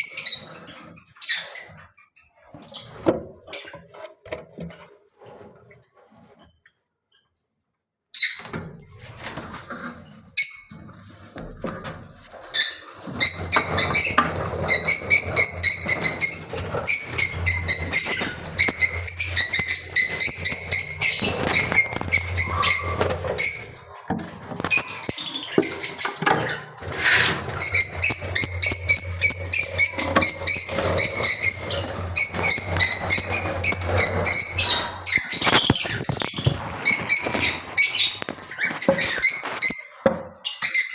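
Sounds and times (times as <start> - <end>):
birds chirping and chattering: 12.5 - 40.9.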